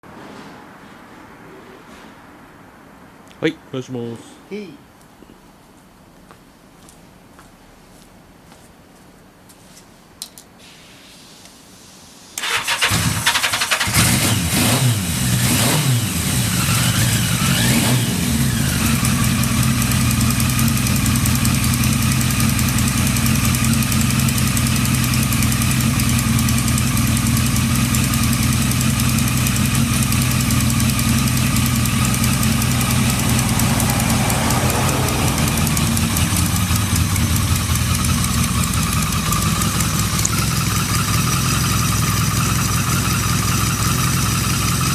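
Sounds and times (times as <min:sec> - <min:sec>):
electric starter cranking: 0:12.4 - 0:14.2
motorcycle engine revving and idling: 0:12.4 - 0:44.9.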